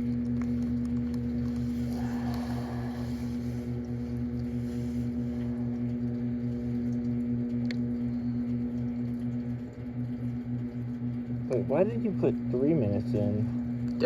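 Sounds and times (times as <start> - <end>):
pulsing low drone: 0.0 - 9.3
microwave oven humming: 0.0 - 14.0.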